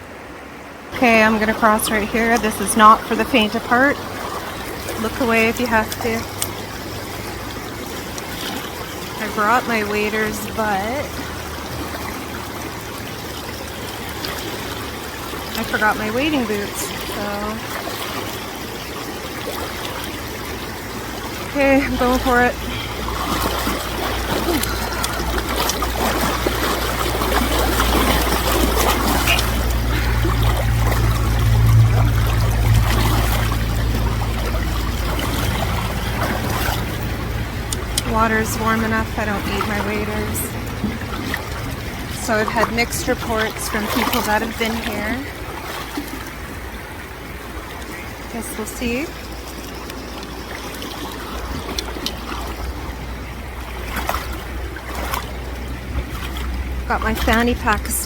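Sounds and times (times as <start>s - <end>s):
river water rushing: 0.0s - 58.0s
person wading through water: 0.9s - 58.0s
low rumble: 20.3s - 45.6s.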